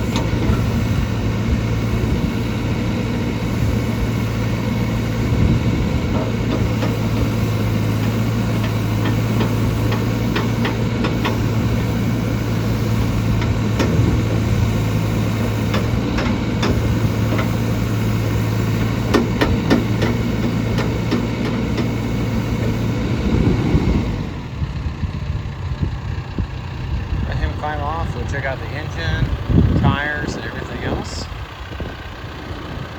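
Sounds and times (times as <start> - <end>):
diesel engine droning: 0.0 - 32.9
sharp knocks and clanks: 6.1 - 12.0, 13.3 - 14.6, 15.3 - 17.7, 18.7 - 22.2.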